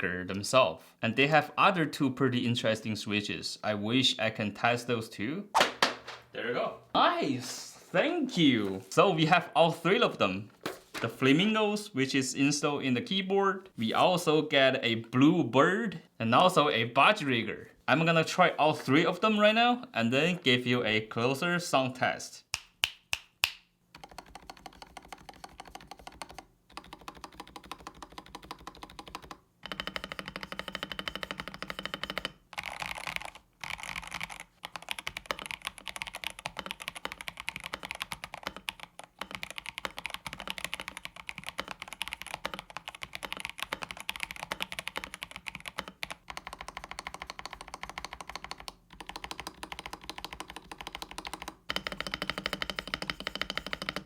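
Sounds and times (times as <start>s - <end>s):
fast typing on mechanical keyboard: 24.0s - 54.0s.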